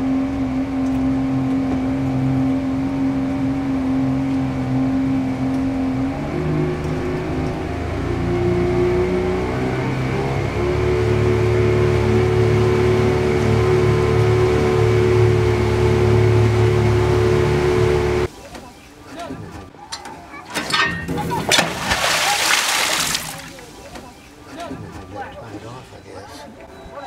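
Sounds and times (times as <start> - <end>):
outboard motor running: 0.0 - 18.3.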